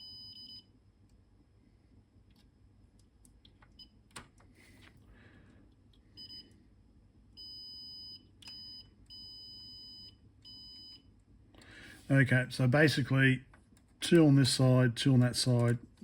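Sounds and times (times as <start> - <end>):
multimeter continuity beep: 0.0 - 0.7, 6.2 - 6.6, 7.4 - 11.1.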